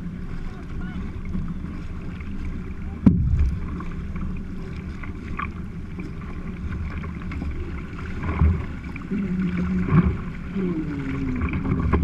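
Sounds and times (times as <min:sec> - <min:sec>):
wind rumble on microphone: 0:00.0 - 0:12.0.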